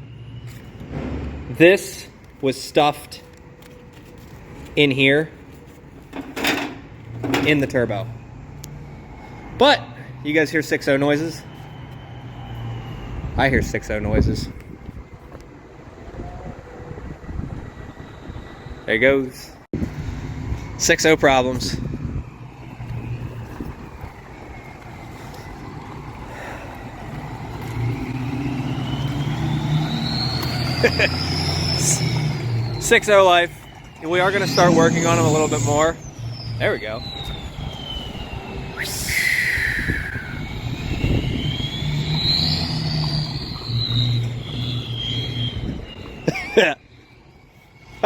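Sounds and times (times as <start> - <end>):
faint high whistle: 0.0 - 3.4, 7.6 - 19.3, 27.7 - 48.0
diesel engine rumbling: 0.0 - 48.0.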